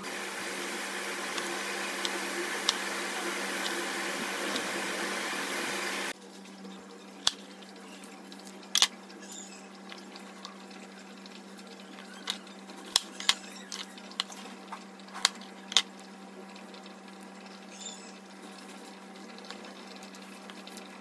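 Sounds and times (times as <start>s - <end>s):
running water: 0.0s - 21.0s
utensil clicks and taps: 1.3s - 2.9s.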